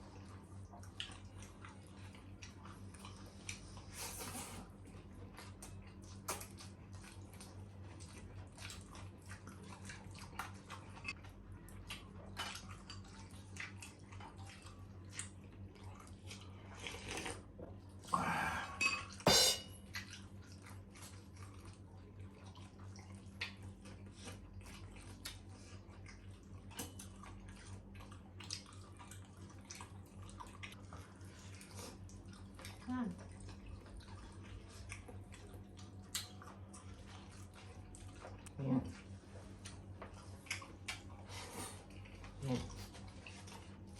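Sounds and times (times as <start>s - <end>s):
cutlery clinking on plates: 18.8s - 19.8s.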